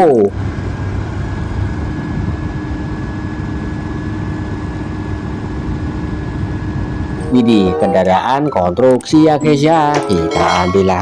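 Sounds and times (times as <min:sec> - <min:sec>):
engine running with low hum: 0:00.0 - 0:07.2.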